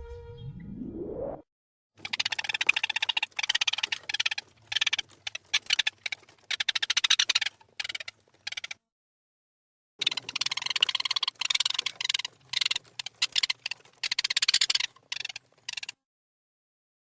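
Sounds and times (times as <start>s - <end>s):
rat chirping: 2.0s - 8.8s, 10.0s - 16.0s.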